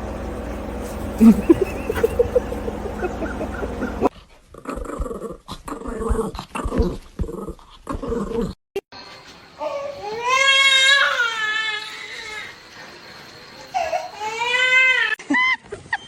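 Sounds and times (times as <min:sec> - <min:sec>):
low steady hum: 0:00.0 - 0:04.1
dog growling: 0:00.1 - 0:04.1.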